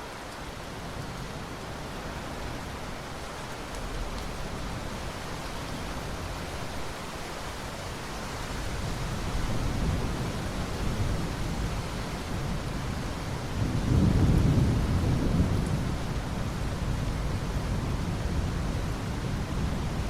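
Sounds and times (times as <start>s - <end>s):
thunder rumbling: 9.3s - 19.9s.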